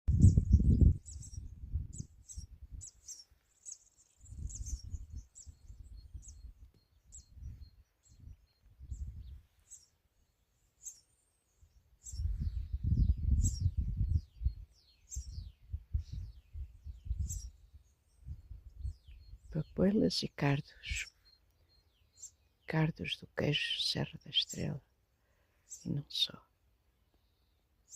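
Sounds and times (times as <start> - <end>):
wind gusts on microphone: 0.1 - 3.0, 4.2 - 9.6, 12.0 - 19.8
small birds chirping: 0.1 - 27.9.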